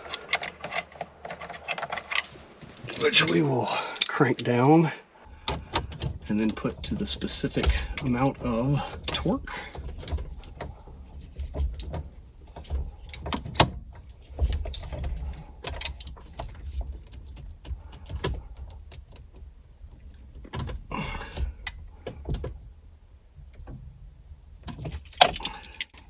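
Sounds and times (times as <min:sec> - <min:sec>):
metal clicks and knocks of tools: 0:00.0 - 0:03.4, 0:24.7 - 0:26.0.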